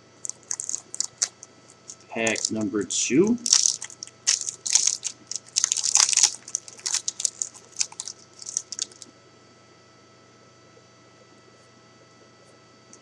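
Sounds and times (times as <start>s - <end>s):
wrapper crinkling as torn open: 0.2s - 2.6s, 3.4s - 9.0s.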